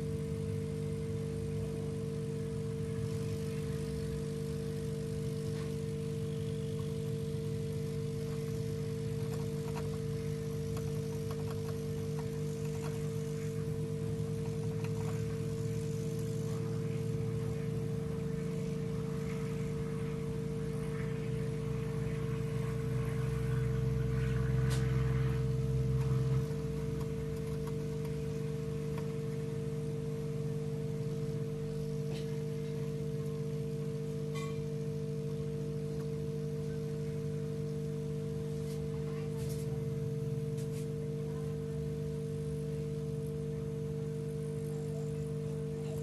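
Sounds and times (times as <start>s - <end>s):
hot air gun blower running: 0.0s - 21.1s.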